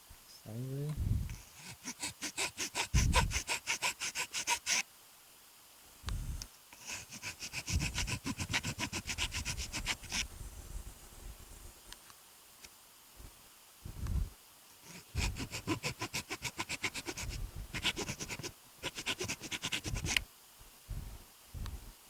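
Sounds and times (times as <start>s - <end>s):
dull low knocks: 20.9s - 21.9s.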